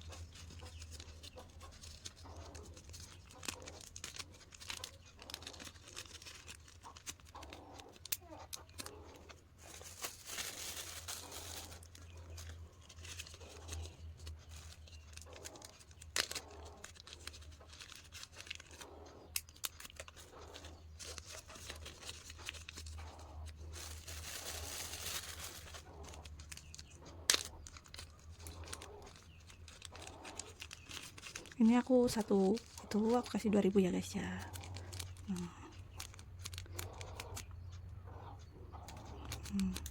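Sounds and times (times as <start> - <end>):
plastic snack packets crinkling: 0.0 - 39.9.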